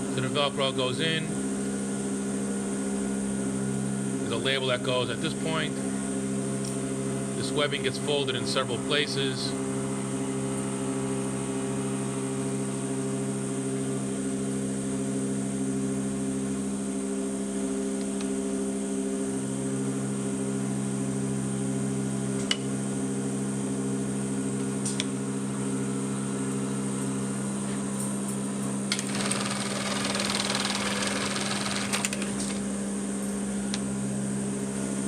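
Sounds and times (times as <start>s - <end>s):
sewing machine mechanism clicks: 28.9s - 32.7s
sewing machine humming: 28.9s - 32.8s.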